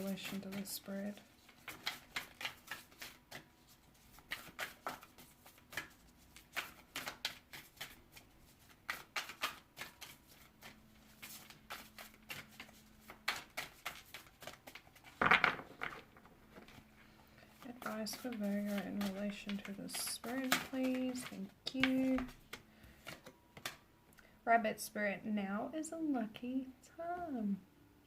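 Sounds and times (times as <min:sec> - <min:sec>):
cards being shuffled: 0:00.0 - 0:23.8.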